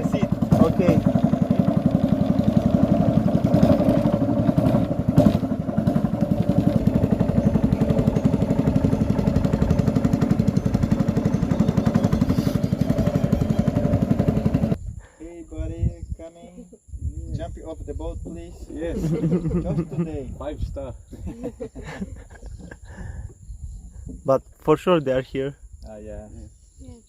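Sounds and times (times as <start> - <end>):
small boat motor running: 0.0 - 14.8.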